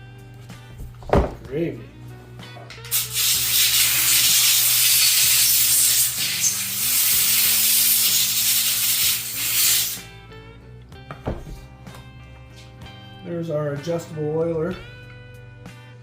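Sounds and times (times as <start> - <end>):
compressed air hissing: 2.9 - 10.1.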